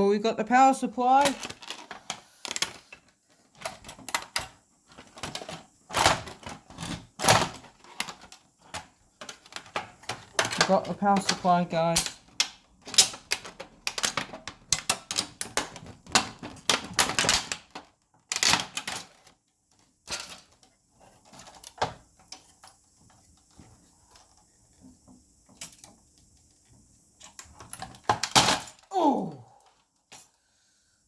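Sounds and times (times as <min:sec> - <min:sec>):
plastic and metal parts clattering: 0:00.6 - 0:26.1, 0:27.2 - 0:28.9.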